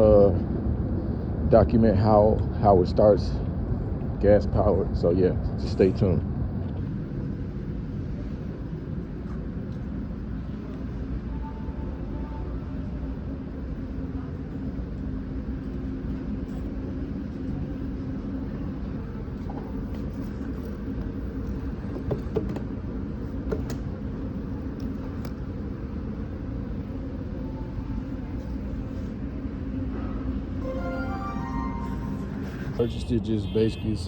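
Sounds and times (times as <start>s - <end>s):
low held tones: 30.0s - 33.0s.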